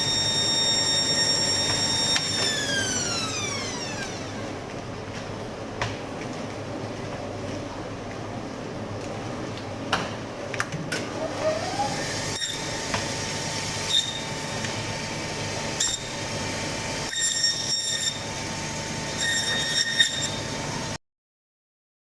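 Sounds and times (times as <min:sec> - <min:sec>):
meat bandsaw running: 0:00.0 - 0:04.6, 0:11.2 - 0:21.0
bandsaw blade squealing: 0:17.0 - 0:18.3, 0:19.1 - 0:20.6.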